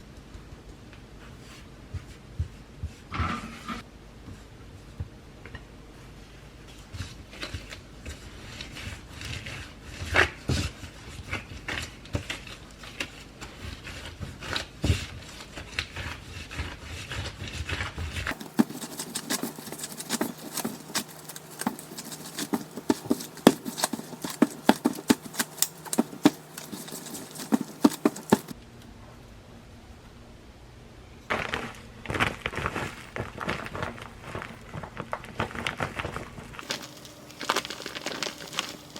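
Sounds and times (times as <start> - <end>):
small objects clicking and tapping: 18.3 - 28.6, 36.6 - 38.9.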